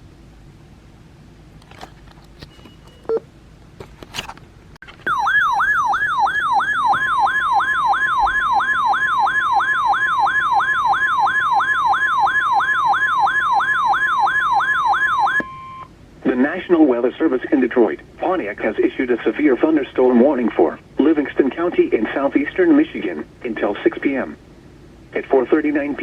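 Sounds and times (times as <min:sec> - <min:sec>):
short beeps: 0:02.4 - 0:03.2, 0:15.4 - 0:15.9
siren-like warble alert tone: 0:05.1 - 0:15.8.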